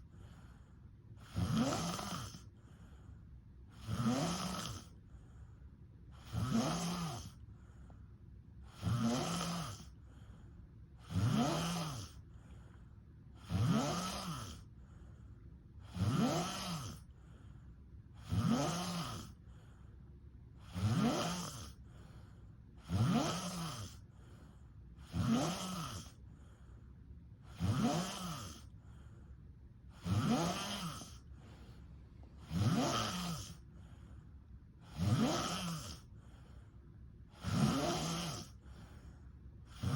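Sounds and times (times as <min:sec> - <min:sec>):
person snoring: 0:01.2 - 0:02.5, 0:03.7 - 0:04.9, 0:06.2 - 0:07.4, 0:08.6 - 0:10.0, 0:11.0 - 0:12.2, 0:13.4 - 0:14.7, 0:15.8 - 0:17.1, 0:18.2 - 0:19.4, 0:20.6 - 0:21.8, 0:22.8 - 0:24.0, 0:25.0 - 0:26.2, 0:27.4 - 0:28.8, 0:29.9 - 0:34.1, 0:34.8 - 0:36.4, 0:37.3 - 0:39.1, 0:39.7 - 0:39.9.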